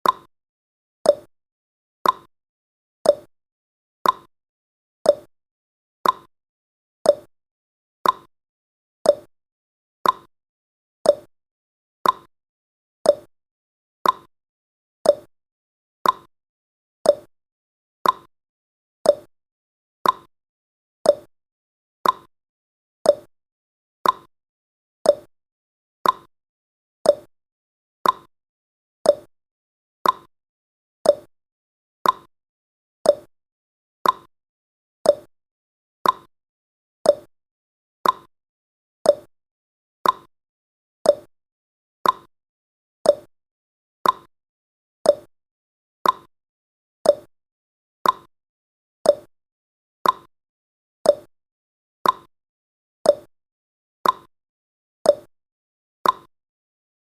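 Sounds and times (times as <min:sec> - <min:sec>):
clock ticking: 0:38.0 - 0:38.3, 0:42.0 - 0:42.3, 0:44.0 - 0:44.3, 0:50.0 - 0:50.3, 0:56.0 - 0:56.3.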